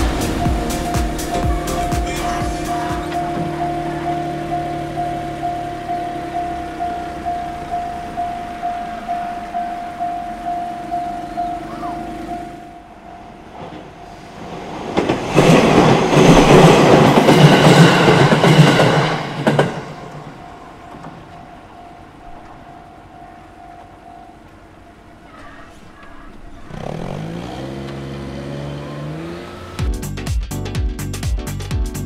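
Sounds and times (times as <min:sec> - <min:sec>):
vehicle engine pulling away: 0:00.0 - 0:13.2, 0:26.3 - 0:30.2
level crossing bell ringing: 0:00.0 - 0:14.3, 0:19.9 - 0:25.4
train passing: 0:00.0 - 0:29.8.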